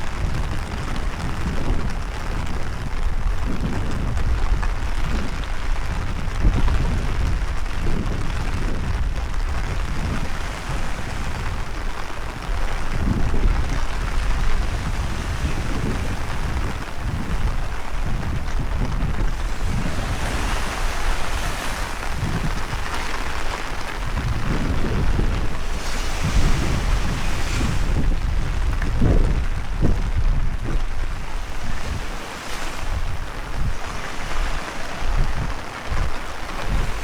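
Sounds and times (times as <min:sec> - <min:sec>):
wind buffeting microphone: 0:00.0 - 0:37.0
heavy rain hiss: 0:09.3 - 0:29.9.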